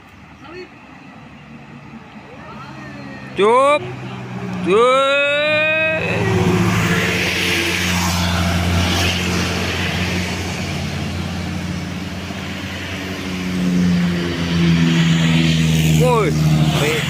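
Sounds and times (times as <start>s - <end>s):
heavy vehicle engine drone: 0.0s - 17.0s.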